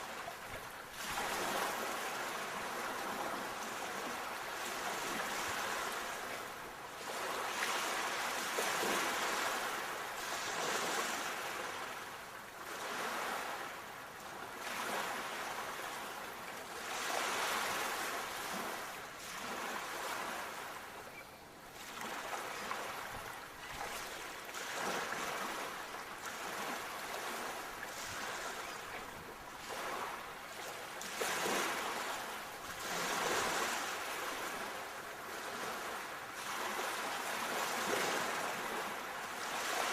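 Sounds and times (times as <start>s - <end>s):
sea waves breaking on shore: 0.0s - 39.9s.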